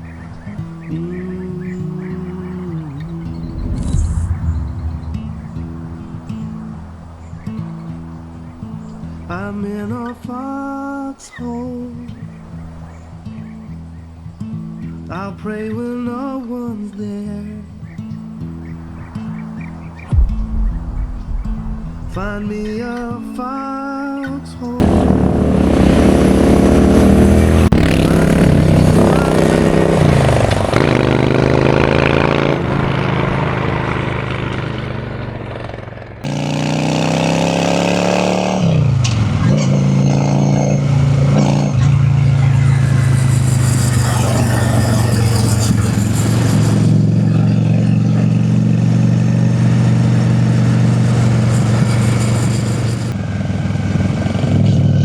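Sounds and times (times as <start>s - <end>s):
motorcycle exhaust: 24.6s - 55.0s.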